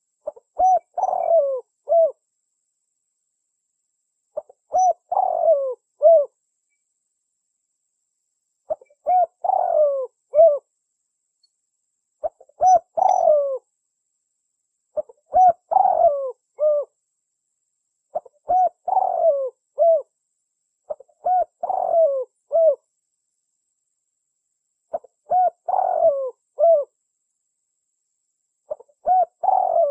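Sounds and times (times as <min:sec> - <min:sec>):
dove cooing: 0:00.2 - 0:02.2, 0:04.4 - 0:06.4, 0:08.7 - 0:10.7, 0:12.2 - 0:13.6, 0:15.0 - 0:17.0, 0:18.1 - 0:20.1, 0:20.9 - 0:22.8, 0:24.9 - 0:27.0, 0:28.7 - 0:29.9.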